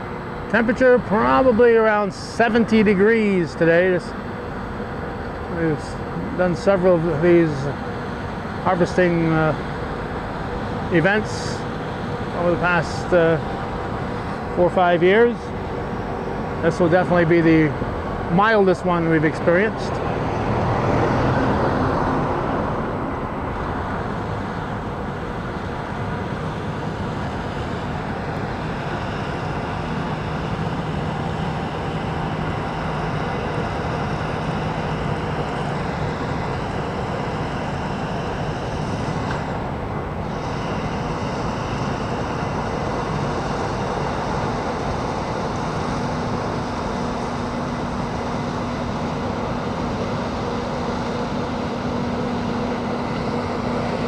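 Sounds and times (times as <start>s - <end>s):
harvesting machine engine drone: 0.0s - 54.0s.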